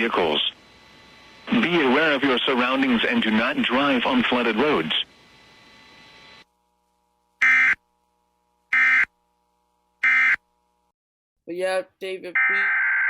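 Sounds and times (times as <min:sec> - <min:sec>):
buzzing digital data tones: 0:07.4 - 0:07.8, 0:08.7 - 0:09.1, 0:10.0 - 0:10.4.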